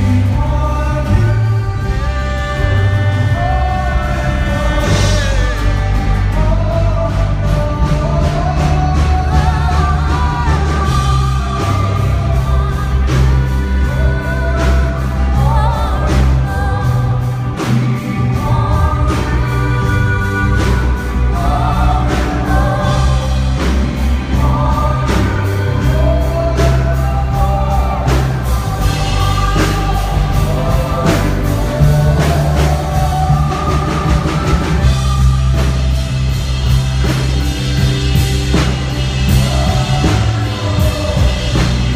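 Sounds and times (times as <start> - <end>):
backing choir singing: 0.0 - 41.9
bass guitar: 0.0 - 41.9
lead vocal singing: 0.0 - 41.9
steady drum beat: 0.0 - 41.9.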